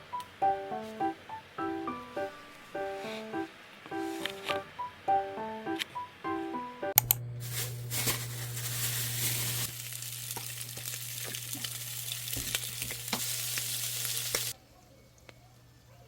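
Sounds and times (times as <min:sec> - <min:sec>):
background music: 0:00.0 - 0:07.0
food sizzling in a frying pan: 0:07.4 - 0:14.6.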